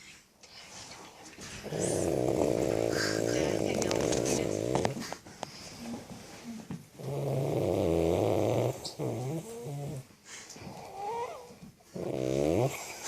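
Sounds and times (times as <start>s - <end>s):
woman snoring loudly: 1.6s - 5.0s, 7.0s - 10.0s, 12.0s - 12.8s.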